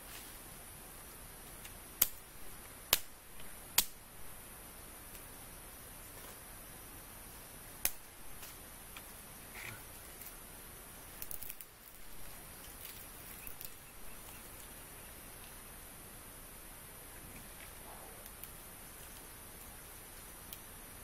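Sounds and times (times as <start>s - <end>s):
steady high hiss: 0.0s - 21.0s
firewood cracking: 11.1s - 12.0s.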